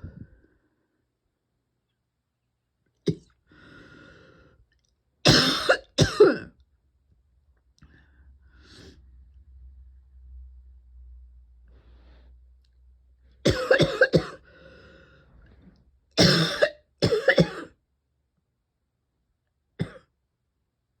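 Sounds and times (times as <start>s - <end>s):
noisy breath in: 3.5s - 4.6s, 7.8s - 9.2s, 11.7s - 12.4s, 14.4s - 15.6s
person coughing harshly: 5.2s - 6.6s, 13.4s - 14.4s, 16.2s - 17.8s, 19.8s - 20.1s.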